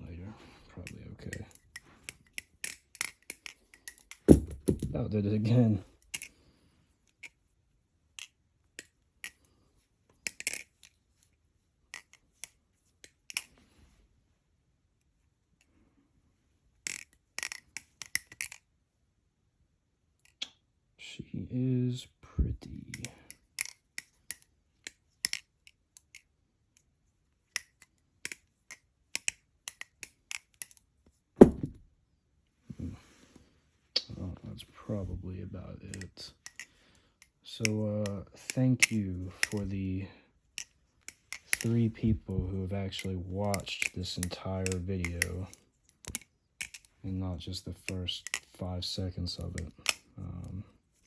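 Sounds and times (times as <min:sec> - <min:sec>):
person speaking: 0:00.0 - 0:01.9, 0:21.0 - 0:23.3, 0:34.0 - 0:36.7, 0:37.4 - 0:40.7, 0:41.3 - 0:50.8
butterfly knife metal clicks: 0:35.9 - 0:39.6, 0:43.0 - 0:46.9.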